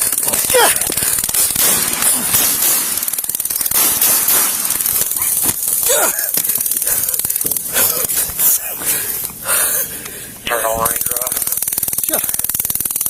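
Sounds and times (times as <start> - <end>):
short strained cry: 0.3 - 1.0, 5.2 - 7.0.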